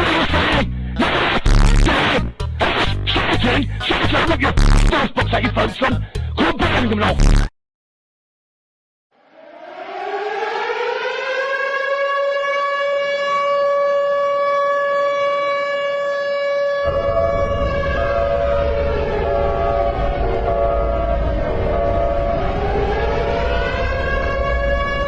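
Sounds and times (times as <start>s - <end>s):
warning siren wailing: 9.2s - 25.0s.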